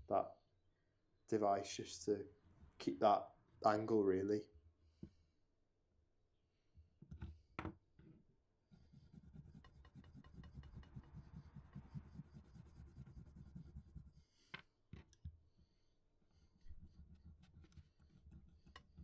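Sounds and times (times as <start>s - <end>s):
chisel rubbing on leather strop: 8.7s - 14.2s, 16.6s - 19.0s.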